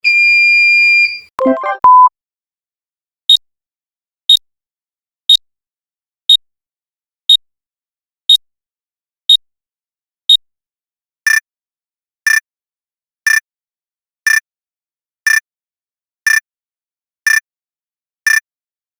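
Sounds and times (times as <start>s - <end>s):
short high electronic beeps: 1.0s - 2.1s
lower rich electronic beep: 1.4s - 2.1s.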